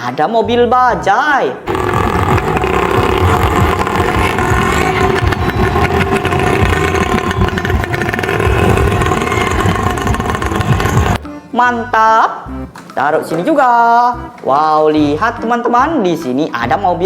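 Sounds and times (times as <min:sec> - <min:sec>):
auto rickshaw engine running: 0:01.7 - 0:11.2.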